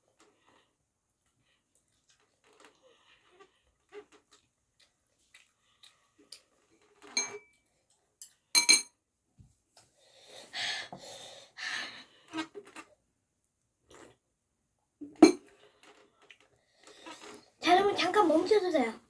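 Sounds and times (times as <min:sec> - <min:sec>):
utensils clinking against a bowl: 0:07.1 - 0:07.6, 0:08.2 - 0:08.9
airy breaths: 0:10.0 - 0:12.1.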